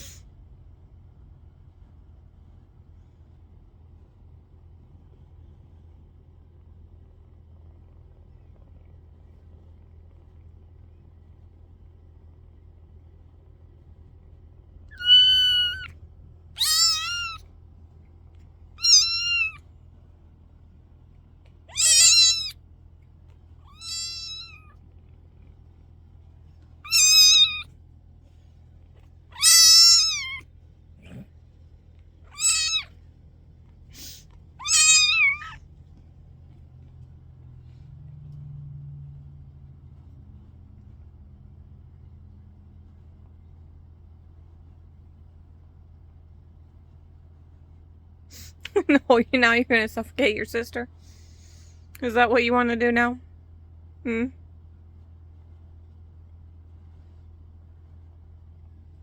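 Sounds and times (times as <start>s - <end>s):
kitten meowing: 14.9s - 15.9s, 16.6s - 17.4s, 18.8s - 19.6s, 21.7s - 22.6s, 23.6s - 24.8s, 26.8s - 27.7s, 29.4s - 30.4s, 32.3s - 32.9s, 34.0s - 35.6s.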